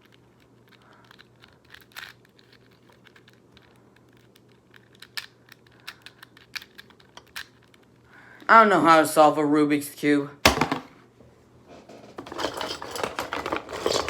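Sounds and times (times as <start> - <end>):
puzzle cube plastic clicks: 0.0 - 8.0.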